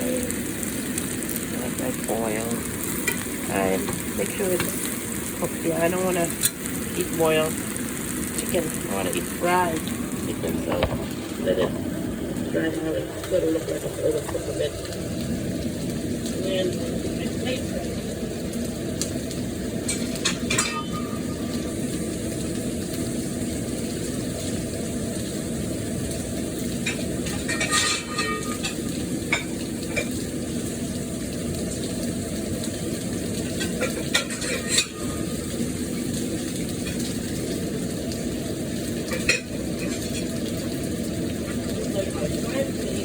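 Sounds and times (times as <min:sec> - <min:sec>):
chicken sizzling in a pan: 0:00.0 - 0:43.0
metal utensil scraping a pan: 0:19.9 - 0:21.4, 0:26.9 - 0:30.1, 0:33.5 - 0:35.4.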